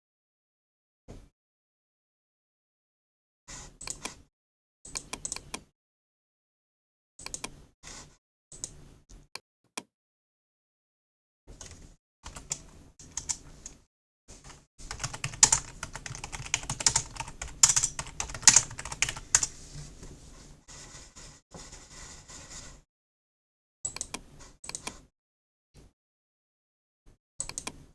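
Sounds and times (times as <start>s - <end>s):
computer keyboard typing: 11.6s - 13.4s, 14.5s - 19.6s.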